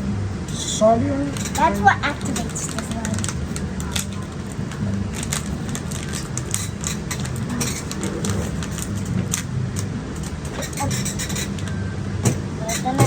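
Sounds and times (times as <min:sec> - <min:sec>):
steady low hum: 0:00.0 - 0:13.0
plastic packets clicking and rustling: 0:01.4 - 0:13.0.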